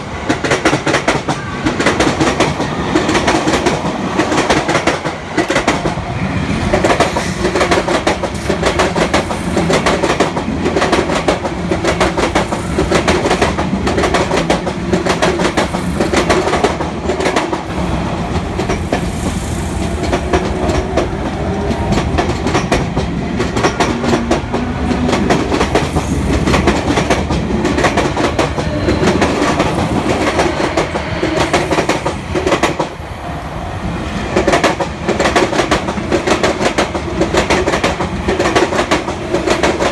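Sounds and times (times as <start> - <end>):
train wheels clacking over rail joints: 6.7 - 17.7, 19.8 - 32.9, 34.4 - 39.9.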